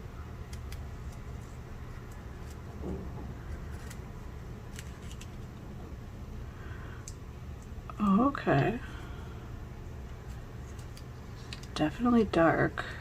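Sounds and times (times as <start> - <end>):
small clicks and handling noises: 0.5 - 4.0, 4.7 - 5.6, 10.1 - 11.8.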